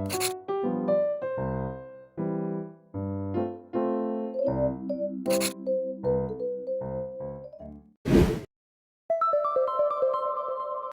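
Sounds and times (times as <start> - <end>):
keyboard background music: 0.0 - 8.0, 9.1 - 10.9
loud whoosh: 8.1 - 8.5.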